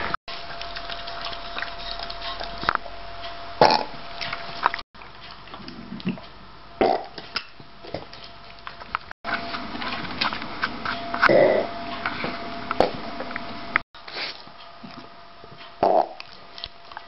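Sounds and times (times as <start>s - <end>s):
dog burping: 3.6s - 4.0s, 6.8s - 7.2s, 11.3s - 11.7s, 15.8s - 16.3s.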